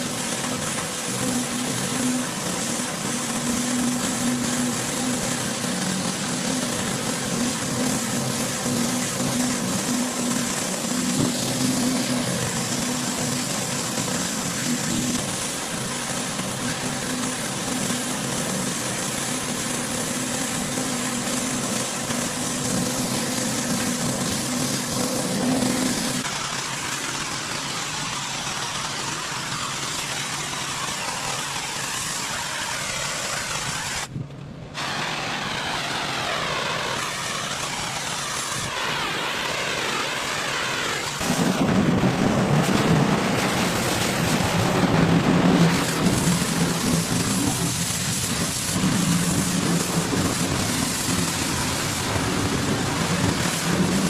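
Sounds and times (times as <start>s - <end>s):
high-pressure water spray hiss: 0.0s - 34.1s, 34.8s - 54.0s
pressure washer engine humming: 0.0s - 54.0s.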